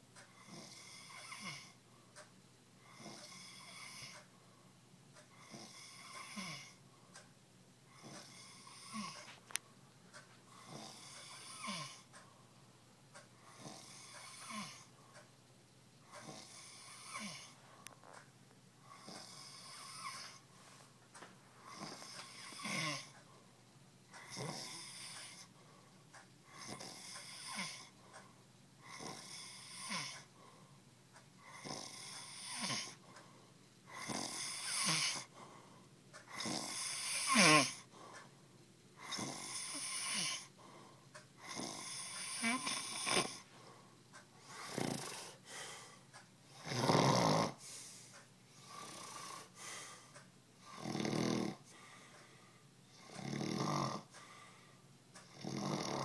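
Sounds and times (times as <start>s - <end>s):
person snoring: 0.4s - 1.8s, 5.4s - 6.8s, 7.9s - 9.4s, 10.6s - 12.1s, 13.5s - 14.9s, 16.2s - 17.6s, 18.9s - 20.4s, 21.6s - 23.2s, 24.2s - 25.5s, 26.5s - 27.9s, 28.8s - 30.2s, 31.4s - 33.0s, 33.9s - 35.3s, 36.3s - 37.9s, 39.0s - 40.5s, 41.4s - 43.4s, 44.5s - 45.4s, 46.6s - 47.6s, 48.6s - 49.6s, 50.6s - 51.7s, 52.9s - 54.1s, 55.3s - 56.0s.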